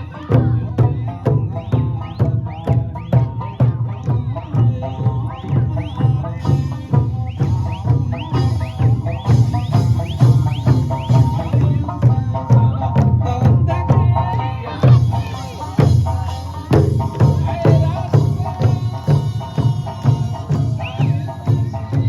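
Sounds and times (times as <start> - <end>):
lively folk music: 0.0 - 22.0
steady drum beat: 0.0 - 22.0.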